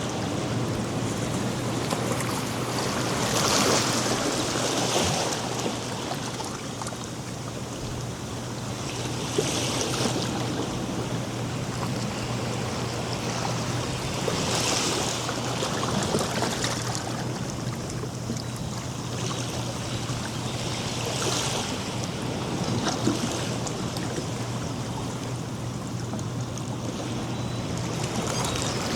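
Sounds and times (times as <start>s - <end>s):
waves breaking on a beach: 0.0s - 28.9s.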